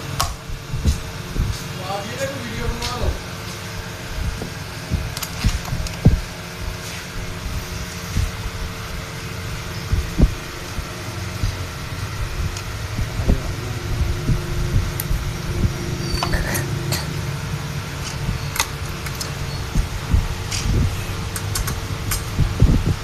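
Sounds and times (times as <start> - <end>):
low mechanical hum: 0.0 - 23.0
sharp clicks and knocks: 4.3 - 6.3, 18.0 - 23.0.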